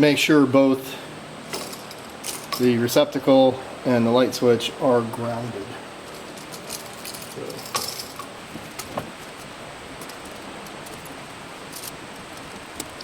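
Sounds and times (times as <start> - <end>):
steady background hiss: 0.0 - 13.0
electrical wiring clicks and taps: 6.2 - 13.0.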